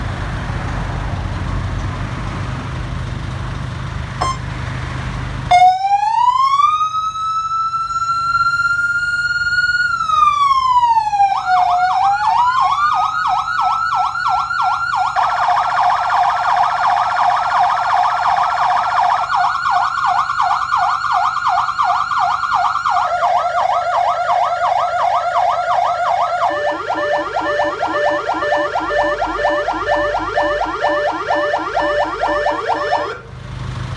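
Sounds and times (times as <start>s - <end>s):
electronic siren wailing and yelping: 4.2s - 4.4s, 5.5s - 33.2s.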